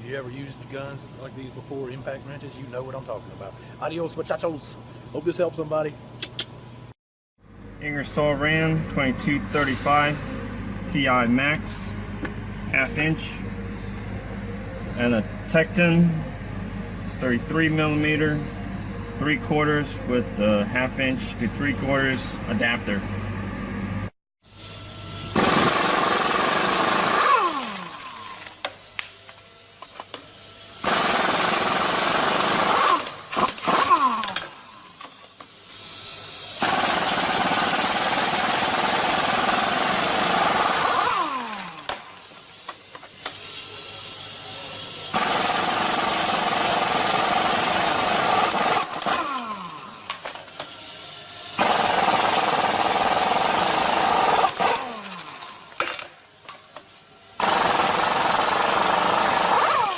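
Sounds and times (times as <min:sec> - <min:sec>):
air impact wrench hammering: 0:25.3 - 0:35.7, 0:36.3 - 0:43.9, 0:45.0 - 0:59.9.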